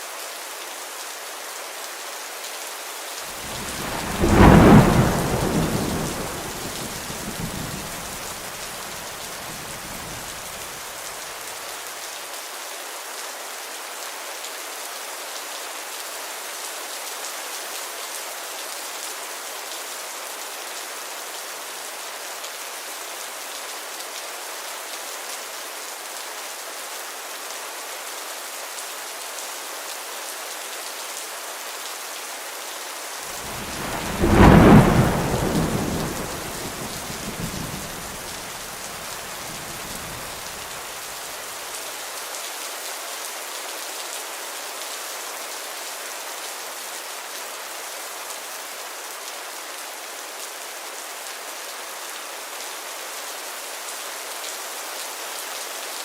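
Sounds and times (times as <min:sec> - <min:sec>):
heavy rain: 0:00.0 - 0:56.0
thunder rumble: 0:03.4 - 0:10.6, 0:33.4 - 0:40.8.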